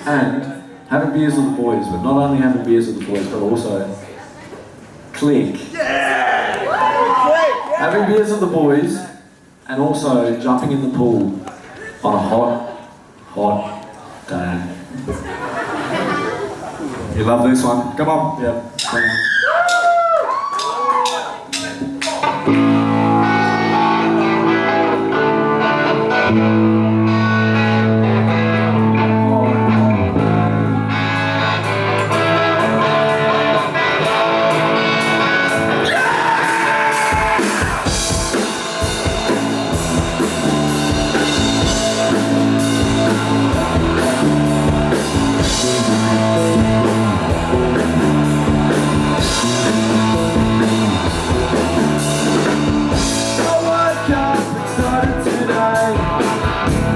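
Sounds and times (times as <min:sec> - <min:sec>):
drum kit beat: 0:19.6 - 0:28.5, 0:29.7 - 0:56.9
live rock band playing: 0:20.6 - 0:56.9
guitar chords: 0:21.6 - 0:56.9.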